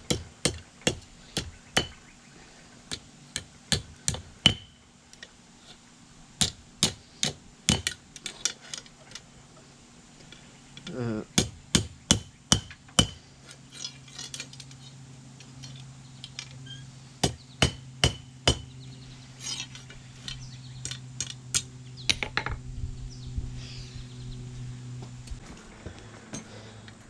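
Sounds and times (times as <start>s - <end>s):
steady low hum: 0.0s - 27.0s
hammer striking steel on anvil: 11.4s - 13.2s, 17.2s - 18.7s.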